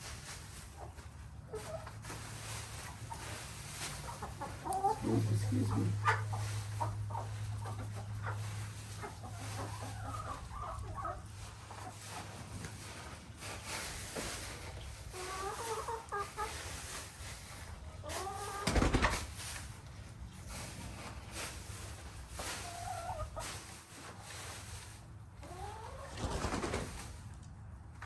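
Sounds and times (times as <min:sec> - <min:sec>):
chickens clucking: 0:00.1 - 0:27.4.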